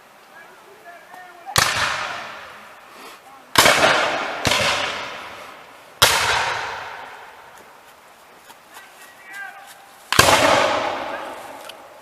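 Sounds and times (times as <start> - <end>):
musket gunshots echoing: 1.6 - 2.5, 3.6 - 5.4, 6.0 - 7.2, 10.1 - 11.6.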